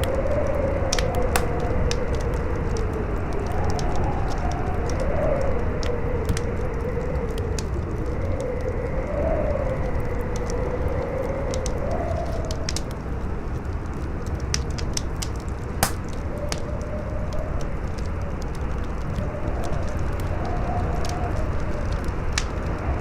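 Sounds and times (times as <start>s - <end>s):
fire crackling: 0.0s - 23.0s
wind howling: 0.0s - 23.0s.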